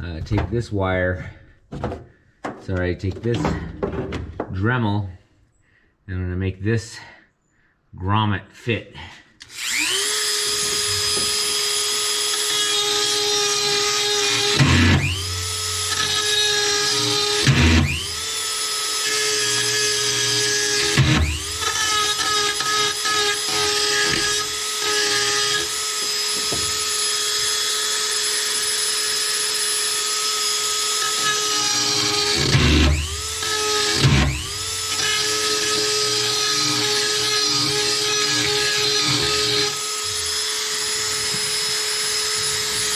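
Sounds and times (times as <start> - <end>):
rotary tool grinding: 9.4 - 42.9.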